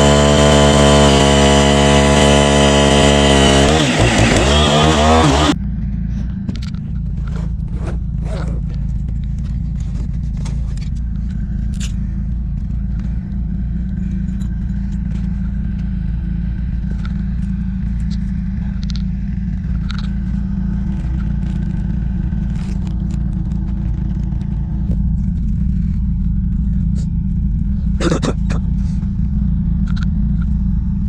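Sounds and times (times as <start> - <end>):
engine rumble: 0.0 - 31.0
light clicks and scrapes: 6.0 - 12.0.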